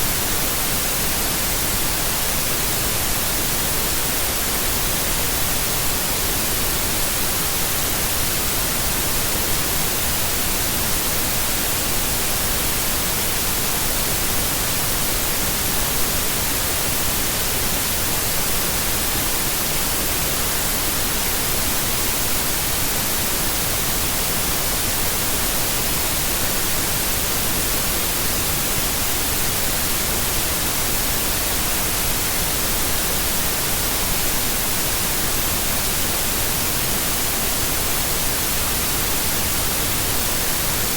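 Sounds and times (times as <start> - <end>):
white noise hiss: 0.0 - 40.9.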